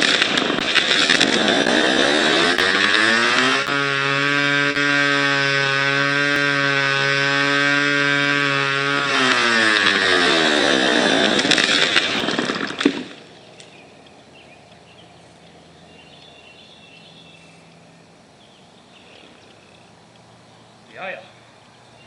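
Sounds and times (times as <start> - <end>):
chainsaw running: 0.0 - 13.3
faint outdoor background: 0.0 - 22.0.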